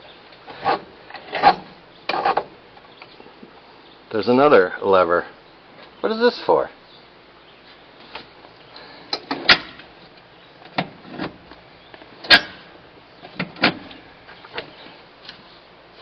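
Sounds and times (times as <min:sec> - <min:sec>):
lever metallic clicks and clunks: 0:10.6 - 0:14.7.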